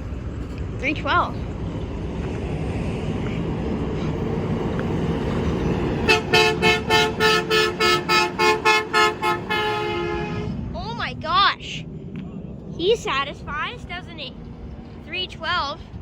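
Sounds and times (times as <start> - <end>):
truck engine rumbling: 0.0 - 16.0
air horn short blasts: 6.1 - 10.5.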